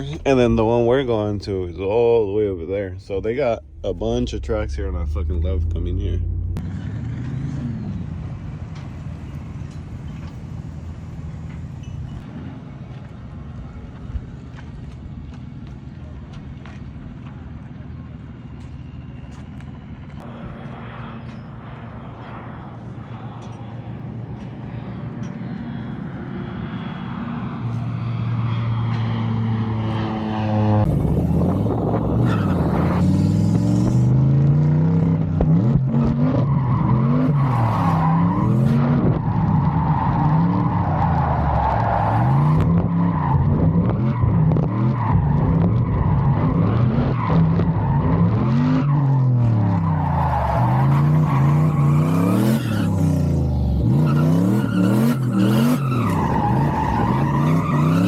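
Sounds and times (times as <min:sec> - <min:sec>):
engine revving: 0:03.0 - 0:08.4, 0:25.5 - 0:58.0
tyres screeching: 0:48.5 - 0:58.0.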